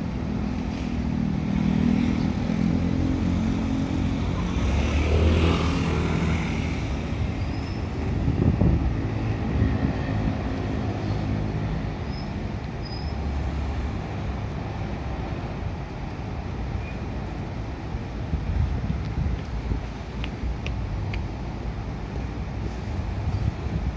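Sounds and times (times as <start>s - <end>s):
heavy diesel engine drone: 0.0s - 11.9s
traffic noise: 0.0s - 23.9s.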